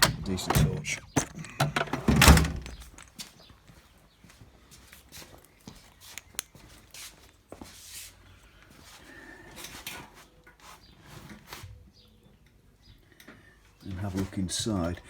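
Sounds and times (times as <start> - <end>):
sharp clicks and knocks: 0.0 - 3.1.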